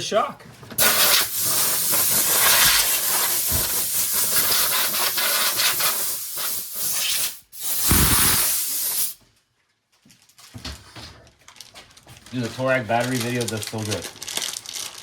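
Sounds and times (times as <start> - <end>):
gas jet hissing: 0.8 - 9.2.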